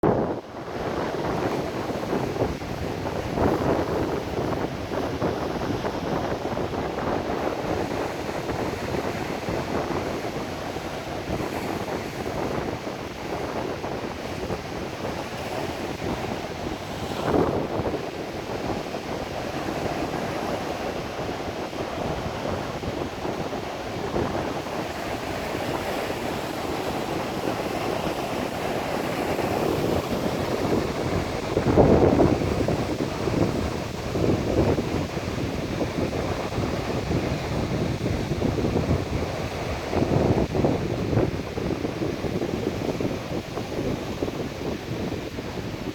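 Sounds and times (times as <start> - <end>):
wind buffeting microphone: 0.0 - 45.9
sea waves washing on shore: 0.1 - 45.9.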